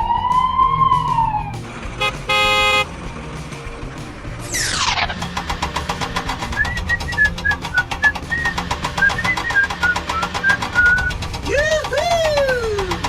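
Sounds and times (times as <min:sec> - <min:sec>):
rapid ticking rattle: 0:04.9 - 0:13.0.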